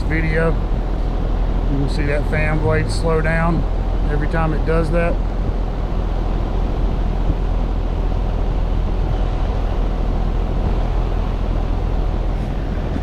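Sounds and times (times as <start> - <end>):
air conditioner humming: 0.0 - 13.0
rush of air: 5.2 - 13.0.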